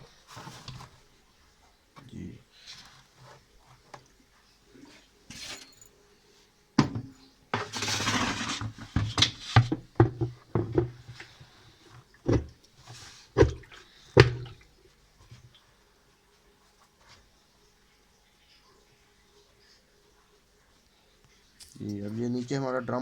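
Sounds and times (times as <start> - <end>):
washing machine tub scraping: 0.0 - 1.1, 7.5 - 14.6
hollow knocks and clunks of tub: 6.8 - 15.6.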